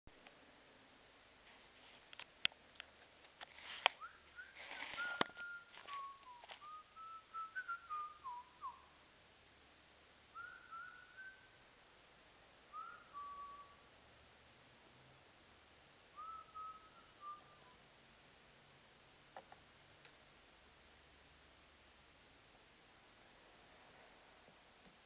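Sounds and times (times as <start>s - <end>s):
person whistling a tune: 4.0s - 8.8s, 10.4s - 11.5s, 12.7s - 13.8s, 16.2s - 17.8s.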